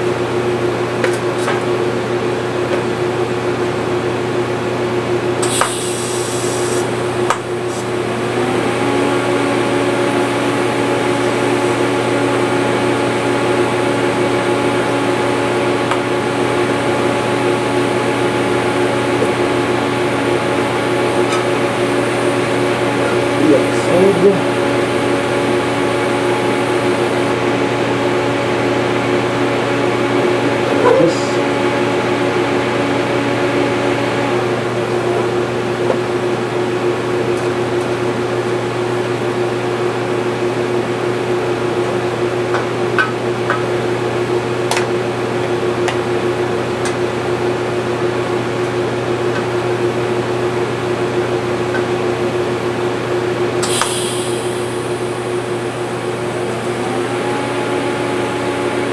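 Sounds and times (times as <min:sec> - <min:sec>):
machine hum with fan rush: 0:00.0 - 0:58.9
steady tones: 0:53.6 - 0:58.9.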